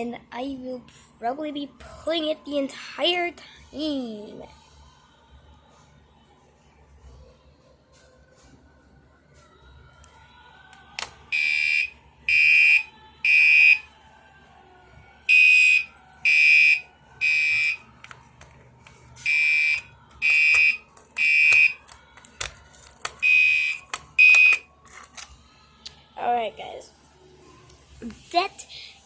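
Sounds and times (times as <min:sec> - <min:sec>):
fire alarm horn blasts: 0:11.3 - 0:13.9, 0:15.3 - 0:17.9, 0:19.2 - 0:21.8, 0:23.2 - 0:24.6.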